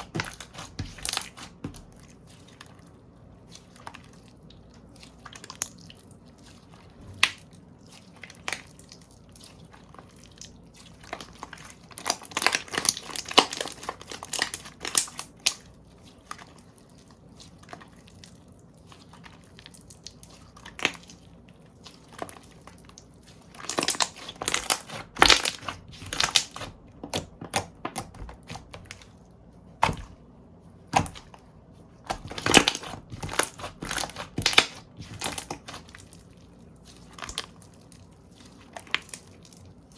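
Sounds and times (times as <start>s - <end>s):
slime clicking and crackling: 0.0s - 29.2s, 30.9s - 31.4s, 32.1s - 39.9s
slime popping: 23.6s - 29.1s, 30.9s - 31.4s, 32.1s - 36.2s.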